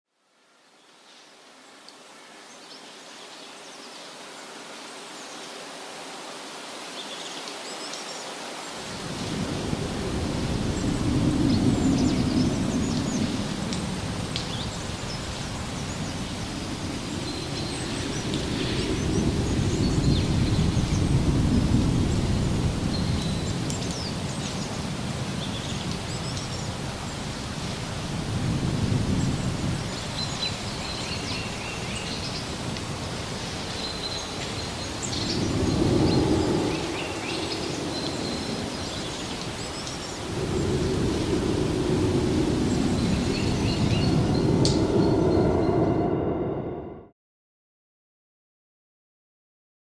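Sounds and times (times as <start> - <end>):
steady outdoor hiss: 0.2 - 45.6
low thunder rumble: 8.9 - 47.1.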